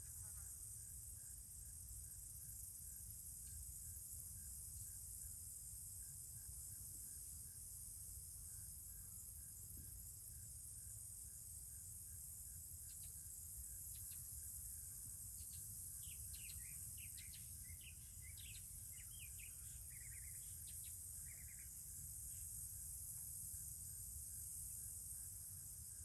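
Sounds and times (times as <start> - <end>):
high-pitched insect chorus: 0.0 - 26.0
small birds chirping: 12.6 - 22.6.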